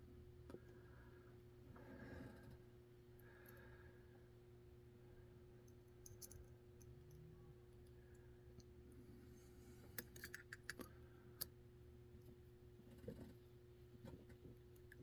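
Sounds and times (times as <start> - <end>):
faint steady hum: 0.0 - 15.0
small clicks of lock pins: 5.7 - 6.9, 10.0 - 11.5.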